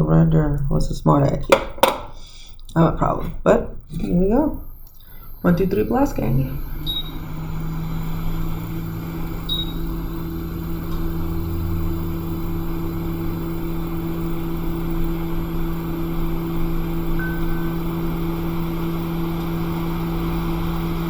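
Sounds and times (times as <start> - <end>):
hot air blower rushing: 5.1 - 21.0
short high beep: 17.2 - 17.9.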